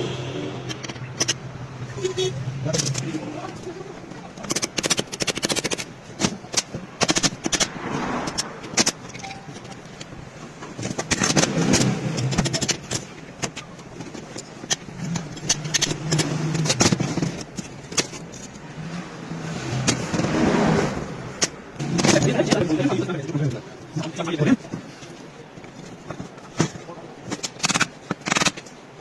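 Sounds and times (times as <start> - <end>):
metal tools clinking and scraping: 0.6 - 7.6, 8.3 - 18.7.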